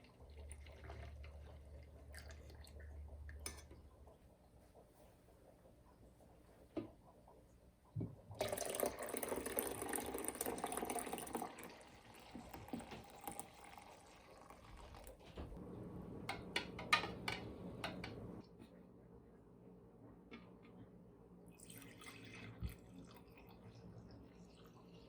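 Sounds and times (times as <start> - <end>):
liquid pouring into a cup: 0.0 - 3.6, 8.3 - 15.2, 21.5 - 25.0.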